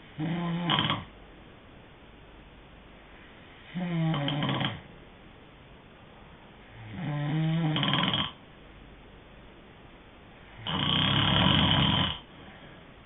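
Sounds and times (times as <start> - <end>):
person snoring: 0.2 - 1.1, 3.7 - 4.8, 6.8 - 8.4, 10.6 - 12.3.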